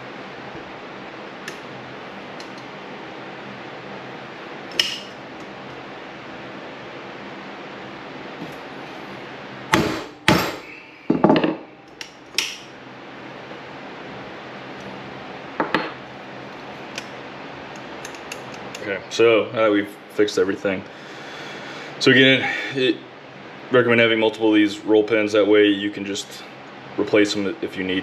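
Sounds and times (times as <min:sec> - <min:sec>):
hammer striking metal: 0:09.7 - 0:11.6.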